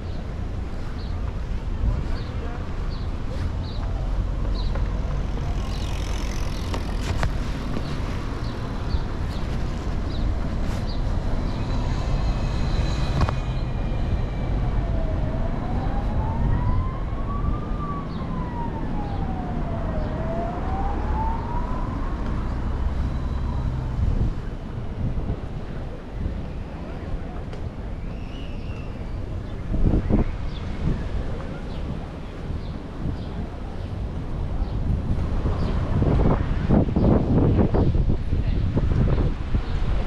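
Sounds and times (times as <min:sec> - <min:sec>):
steady low rumble: 0:02.7 - 0:11.3
emergency vehicle siren wailing: 0:04.7 - 0:09.6, 0:12.8 - 0:24.2.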